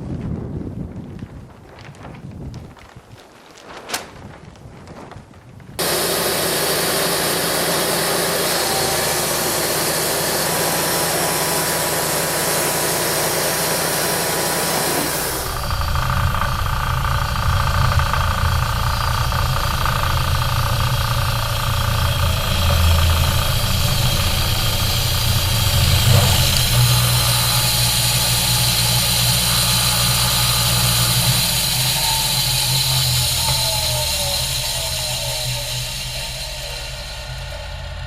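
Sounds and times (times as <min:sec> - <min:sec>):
engine running steadily: 0:05.8 - 0:38.0.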